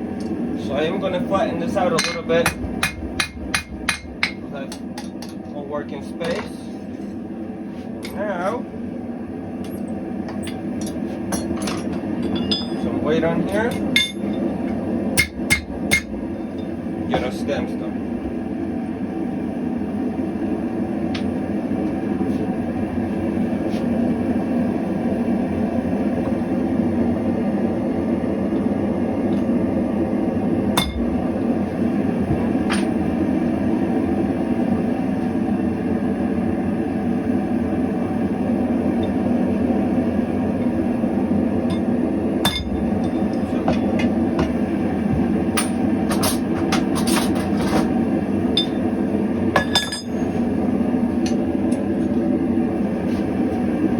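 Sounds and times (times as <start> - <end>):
hammer striking steel stamps: 2.0 - 5.4.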